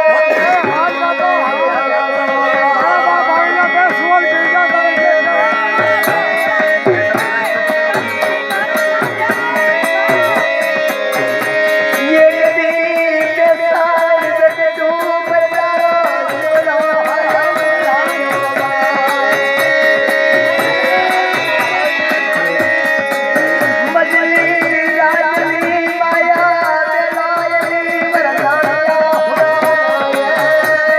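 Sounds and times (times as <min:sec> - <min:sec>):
ornamented melodic line: 0:00.0 - 0:30.9.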